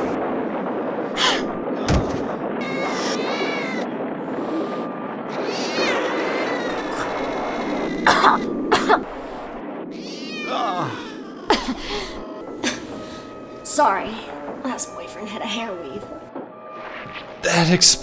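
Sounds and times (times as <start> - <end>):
cat meowing and yowling: 2.6 - 3.9, 5.3 - 8.5, 9.9 - 11.6.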